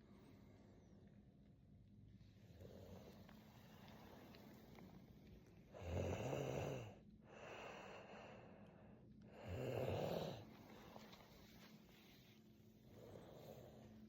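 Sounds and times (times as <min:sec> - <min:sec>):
person snoring: 0:09.4 - 0:10.5.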